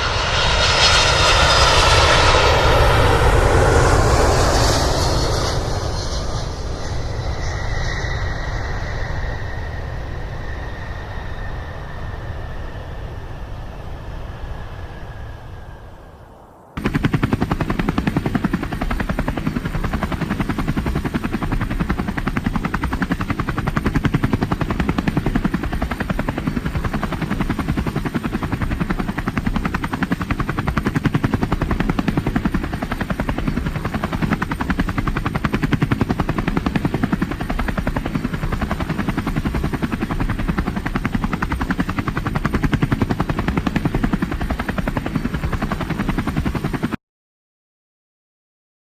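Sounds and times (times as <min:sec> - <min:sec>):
helicopter rotor chopping: 0:00.0 - 0:11.7, 0:16.8 - 0:47.0
vehicle whine: 0:00.0 - 0:16.8.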